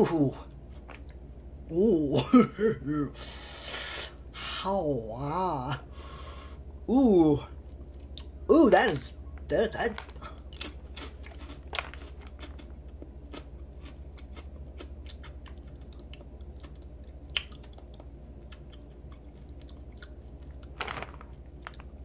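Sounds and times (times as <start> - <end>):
steady low hum: 0.0 - 22.0
person chewing crunchy snack: 9.9 - 22.0.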